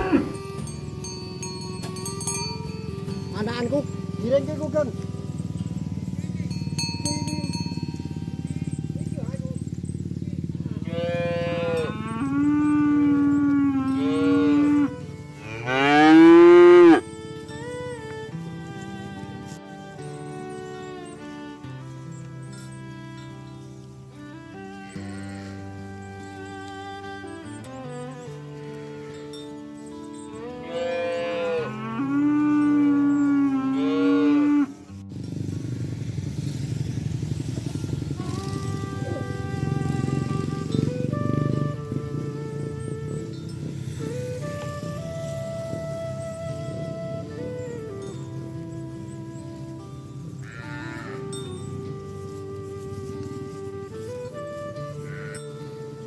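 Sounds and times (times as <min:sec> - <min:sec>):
cattle mooing: 0:00.0 - 0:01.2, 0:04.0 - 0:17.6, 0:24.6 - 0:29.2, 0:29.9 - 0:34.9, 0:36.4 - 0:41.7, 0:50.4 - 0:52.4, 0:55.0 - 0:55.5
background music: 0:00.0 - 0:10.0, 0:10.6 - 0:56.0
low buzzing rumble: 0:00.0 - 0:15.6.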